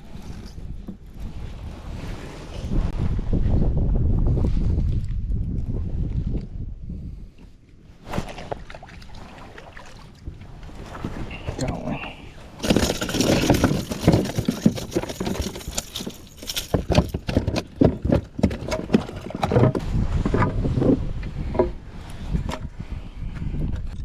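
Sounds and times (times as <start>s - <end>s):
wind: 0.0s - 24.0s
water washing: 12.6s - 17.4s
objects knocking against plastic kayak: 12.6s - 20.6s.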